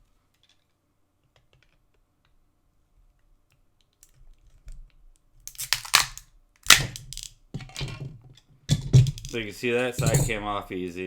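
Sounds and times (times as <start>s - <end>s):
plastic case cracking and crunching: 5.5s - 7.9s.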